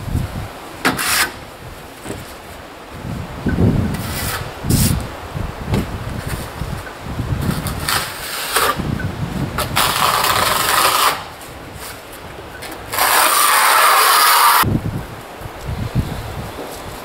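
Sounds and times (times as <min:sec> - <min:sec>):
trowel scraping plaster on wall: 0:00.8 - 0:01.4, 0:03.9 - 0:05.0, 0:07.4 - 0:08.9, 0:09.6 - 0:12.0, 0:12.7 - 0:14.6.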